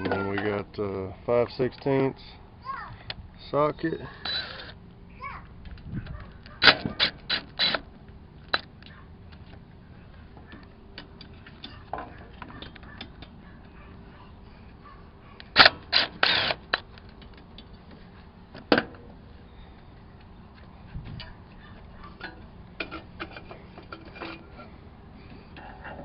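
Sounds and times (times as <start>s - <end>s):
metal clanks: 21.2s - 24.8s.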